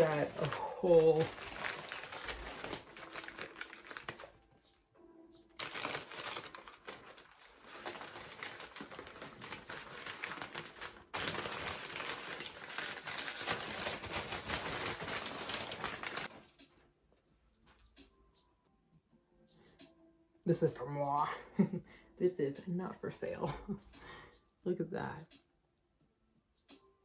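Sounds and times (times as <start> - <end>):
packing material crinkling: 0.0 - 4.5, 5.6 - 16.4.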